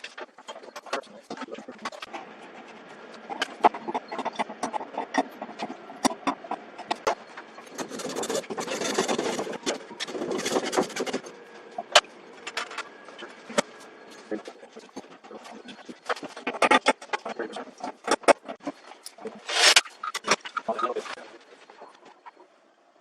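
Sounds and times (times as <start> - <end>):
scraping rasping: 1.8 - 11.4, 19.4 - 21.2.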